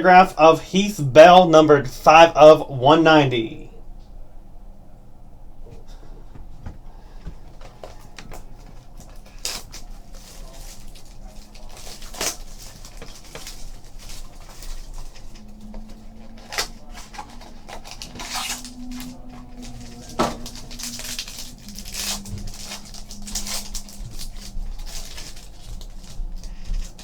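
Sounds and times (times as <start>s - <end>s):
cards rustling and tapping: 6.3s - 27.0s
card packs crinkling: 7.2s - 27.0s.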